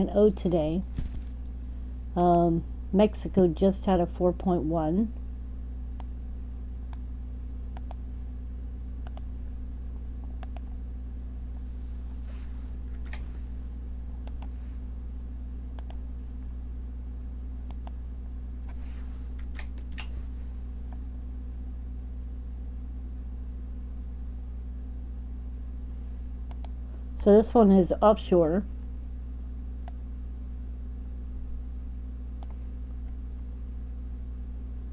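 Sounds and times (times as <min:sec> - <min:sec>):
steady low hum: 0:00.0 - 0:34.9
soft rustles: 0:00.8 - 0:01.4, 0:11.9 - 0:13.6, 0:18.7 - 0:19.4
computer mouse clicking: 0:07.8 - 0:08.0, 0:09.0 - 0:09.3, 0:10.4 - 0:10.7, 0:14.2 - 0:14.5, 0:15.8 - 0:16.0, 0:19.4 - 0:20.2, 0:26.5 - 0:26.8, 0:32.4 - 0:32.6.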